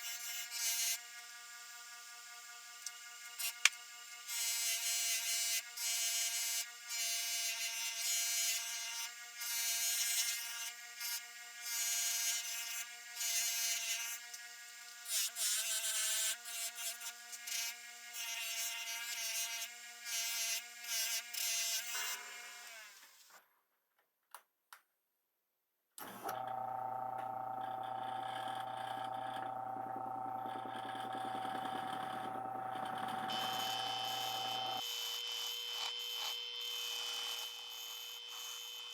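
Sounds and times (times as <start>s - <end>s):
polishing wheel motor running: 26.3s - 34.8s
metal scrubbing on buffing wheel: 29.5s - 34.8s.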